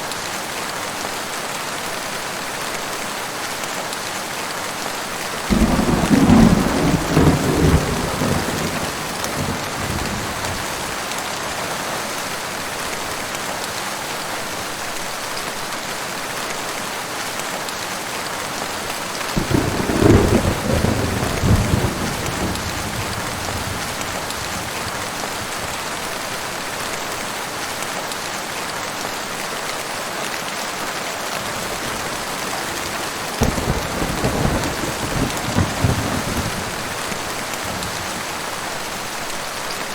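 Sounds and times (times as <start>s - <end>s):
heavy rain hissing: 5.2s - 13.6s, 18.4s - 39.9s
rolling thunder: 5.5s - 11.0s, 19.4s - 25.8s, 31.4s - 38.5s.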